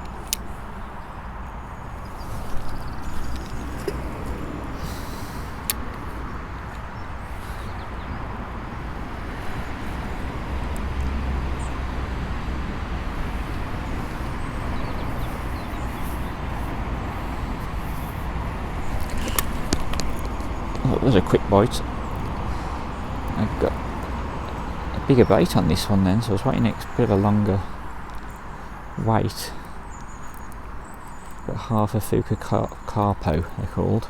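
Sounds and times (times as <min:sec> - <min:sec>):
low rumbling background noise: 0:00.0 - 0:34.0.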